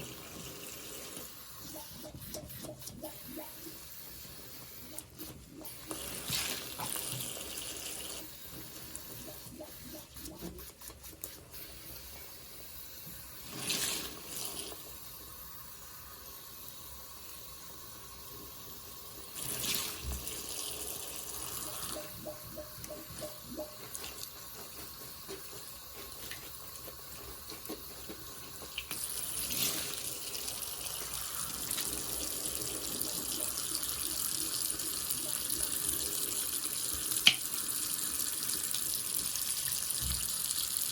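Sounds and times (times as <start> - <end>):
liquid running: 0.0 - 15.4, 16.0 - 40.9
sponge squishing: 1.6 - 12.5, 13.4 - 14.8, 21.3 - 33.6.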